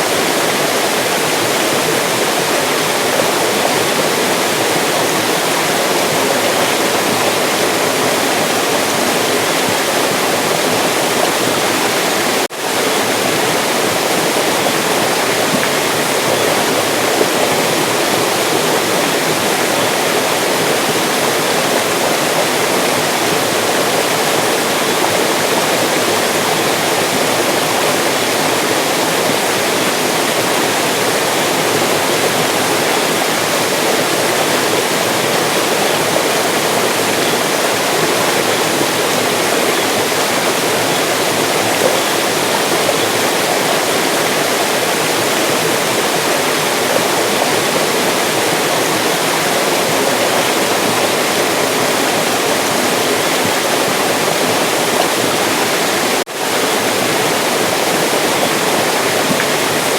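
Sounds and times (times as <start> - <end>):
stream rushing and splashing: 0.0 - 59.9.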